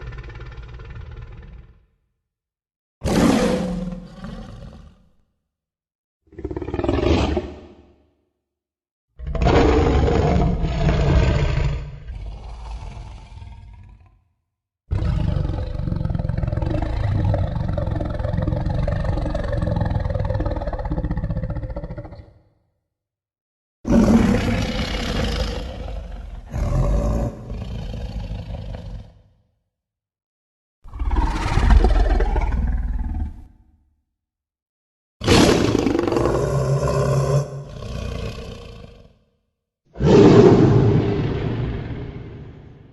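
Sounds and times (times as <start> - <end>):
low rough creature roar: 9.2 - 14.2, 14.9 - 22.5, 23.9 - 29.3, 30.9 - 33.5, 35.2 - 39.3, 40.0 - 42.9.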